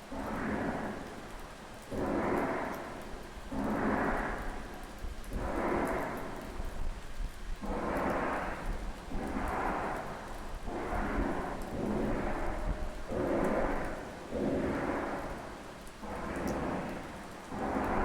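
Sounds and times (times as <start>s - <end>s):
rumbling sky blasts: 1.9s - 18.0s.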